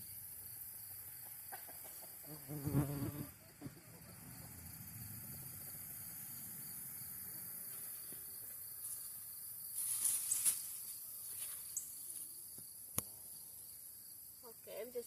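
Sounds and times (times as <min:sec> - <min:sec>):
crickets chirping: 0:00.0 - 0:15.0
leaves rustling: 0:07.7 - 0:12.5.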